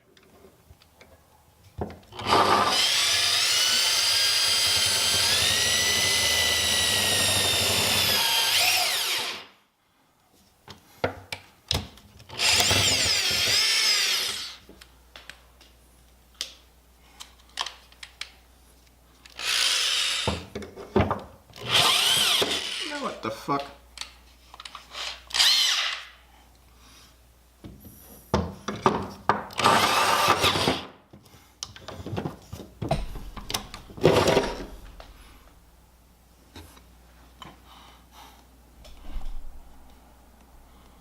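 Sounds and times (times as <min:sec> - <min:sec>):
power drill boring sheet metal: 0:02.2 - 0:09.5, 0:12.3 - 0:14.6, 0:19.4 - 0:20.4, 0:21.6 - 0:23.1, 0:25.0 - 0:26.1, 0:29.6 - 0:30.9.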